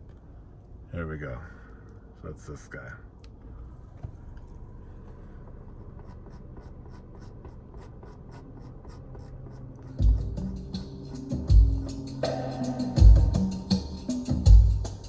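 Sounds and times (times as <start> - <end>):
heavy bass hit: 10.0 - 15.0.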